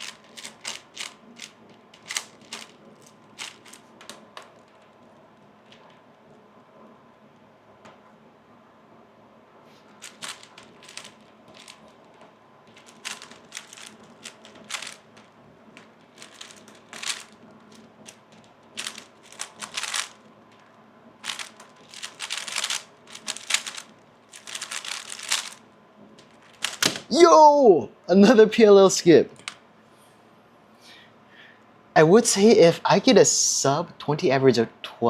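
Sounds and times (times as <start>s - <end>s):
speed cube clicking turns: 0.0s - 4.2s, 10.0s - 12.0s, 12.7s - 15.3s, 16.1s - 20.6s, 21.2s - 25.6s, 26.2s - 27.2s.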